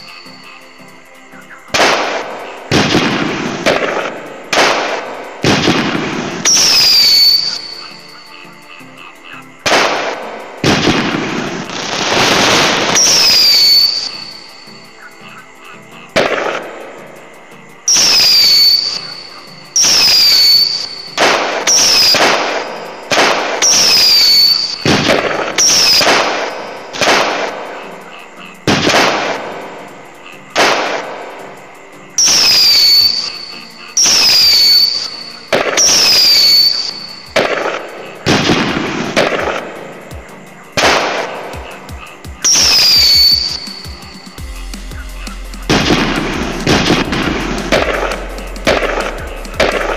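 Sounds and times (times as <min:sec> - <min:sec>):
firework crackle: 0:01.7 - 0:08.2, 0:09.6 - 0:14.7, 0:16.2 - 0:28.0, 0:28.6 - 0:49.9
firework bangs: 0:01.8 - 0:07.6, 0:09.7 - 0:14.4, 0:19.8 - 0:27.7, 0:28.7 - 0:29.6, 0:45.7 - 0:49.9.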